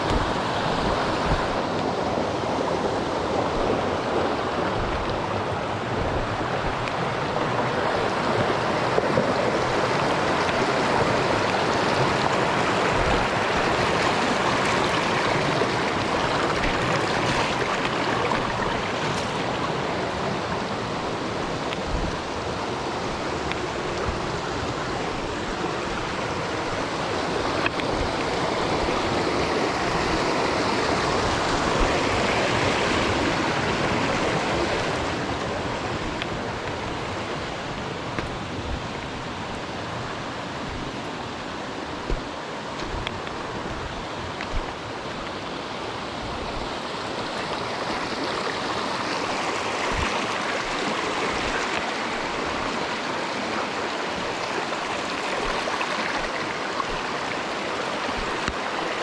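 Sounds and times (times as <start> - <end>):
stream rushing over rocks: 0.0 - 59.0.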